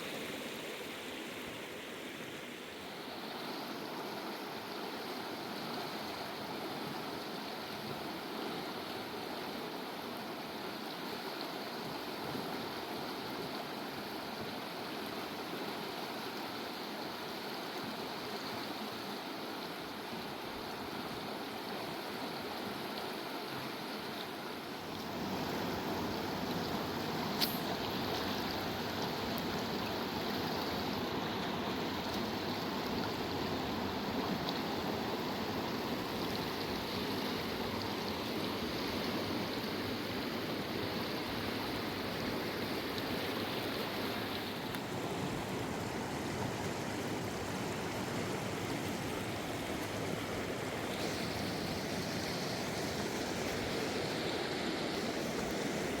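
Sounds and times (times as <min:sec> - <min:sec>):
river water rushing: 0:00.0 - 0:56.0
short sharp click: 0:27.4 - 0:27.6.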